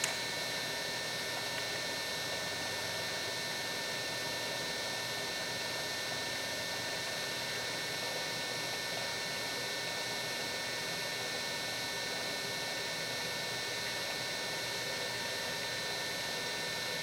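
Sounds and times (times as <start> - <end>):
milling machine running: 0.0 - 5.9.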